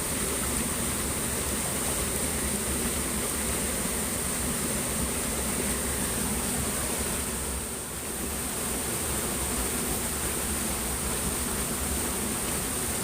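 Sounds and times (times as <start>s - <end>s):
stream water flowing: 0.0s - 13.0s.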